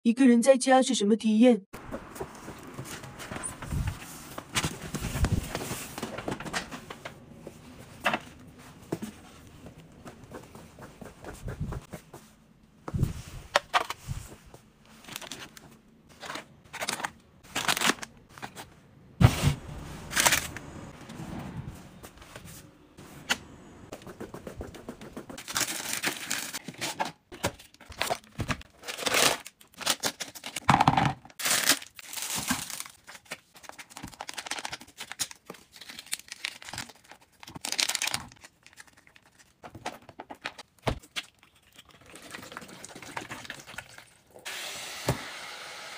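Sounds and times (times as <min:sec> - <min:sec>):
plastic packaging crinkling and tearing: 0:16.2 - 0:18.6, 0:25.4 - 0:30.6, 0:31.3 - 0:39.6.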